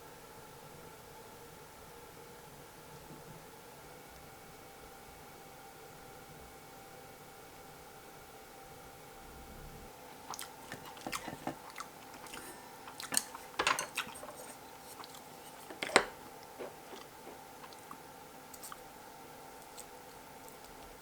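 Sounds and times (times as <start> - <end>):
faint steady hum: 0.0 - 21.0
person chewing and biting: 10.2 - 18.9, 19.5 - 21.0
utensil knocks and crunching: 10.3 - 18.8.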